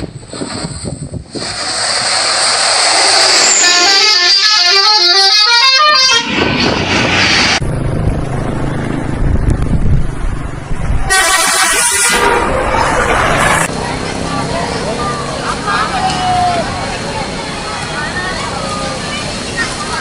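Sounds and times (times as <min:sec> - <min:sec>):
bus multi-tone horn melody: 0:03.4 - 0:07.6, 0:11.0 - 0:13.7
low engine rumble: 0:06.9 - 0:20.0.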